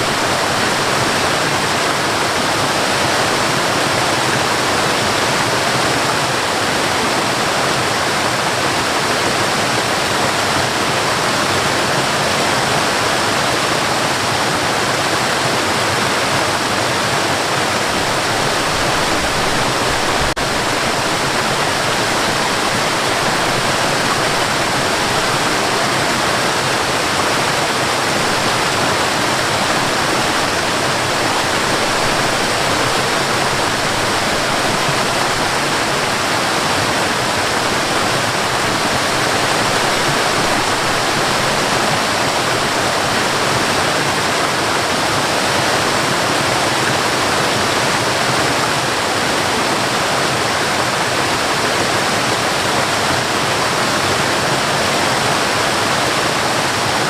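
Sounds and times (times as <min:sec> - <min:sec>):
waterfall and river rushing: 0:00.0 - 0:57.0.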